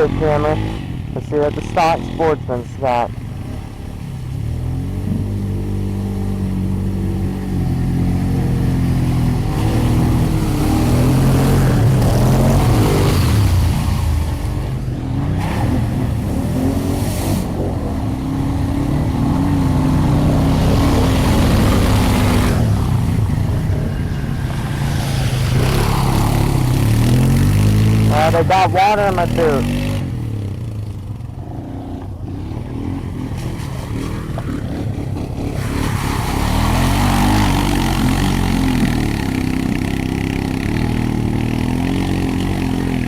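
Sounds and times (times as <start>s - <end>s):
atv engine revving: 0.0s - 43.0s
water and mud splashing: 0.0s - 43.0s.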